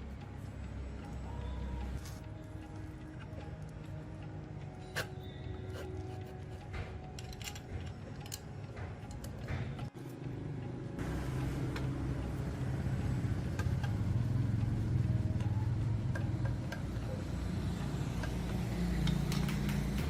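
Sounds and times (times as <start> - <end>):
scattered clicks and knocks: 6.2 - 10.4, 11.0 - 17.4, 18.1 - 20.0
machine humming: 9.5 - 20.0.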